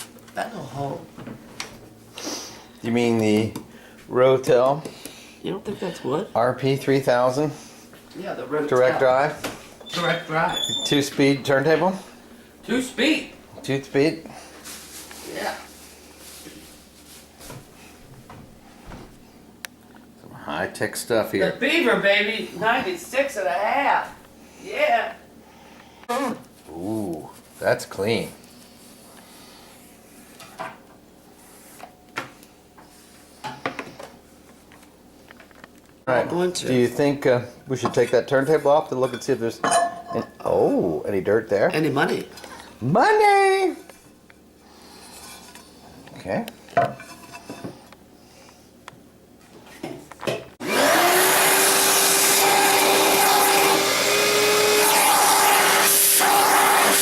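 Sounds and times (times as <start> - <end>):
vacuum cleaner motor whine: 50.6 - 57.0.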